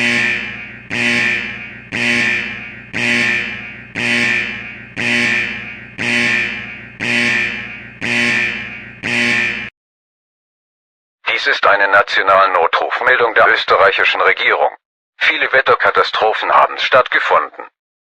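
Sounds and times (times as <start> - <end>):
alarm tone pulses: 0.0 - 9.7.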